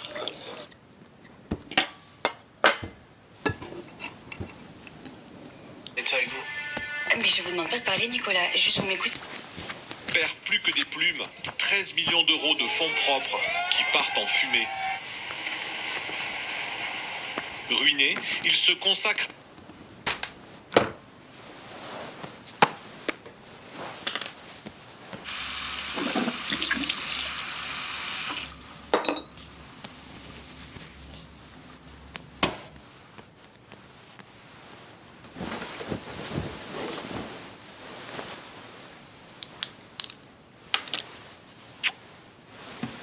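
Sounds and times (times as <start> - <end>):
water running: 0.0 - 0.8, 6.3 - 18.5, 25.2 - 29.1.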